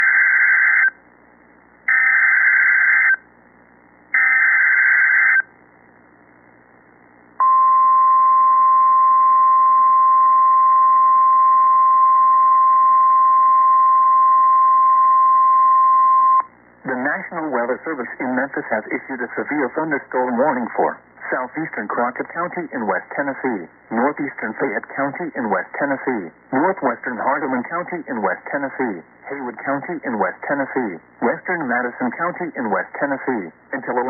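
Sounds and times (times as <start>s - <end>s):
steady warning alarm tone: 1.9s - 3.2s.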